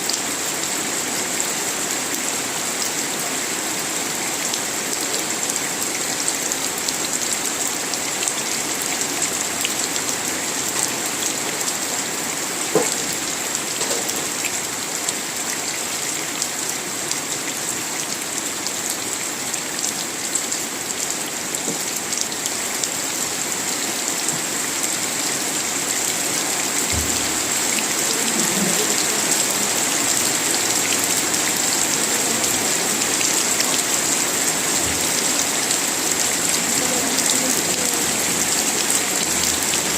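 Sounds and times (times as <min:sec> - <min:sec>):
steady rain falling: 0:00.0 - 0:39.9.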